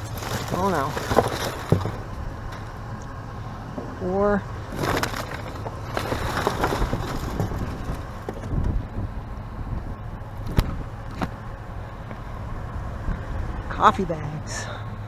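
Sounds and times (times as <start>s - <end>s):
rustling through trash: 0.0s - 9.2s
steady low rumble: 0.0s - 15.0s.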